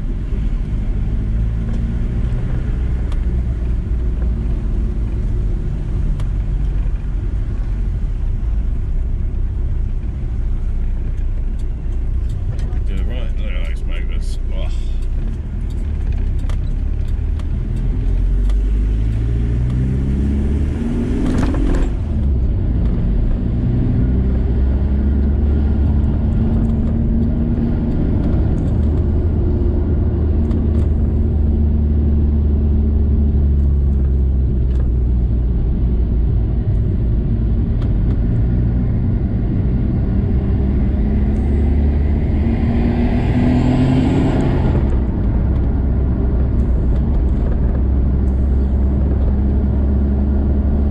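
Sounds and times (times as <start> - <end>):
road rumble: 0.0 - 50.9
van engine: 0.0 - 50.9.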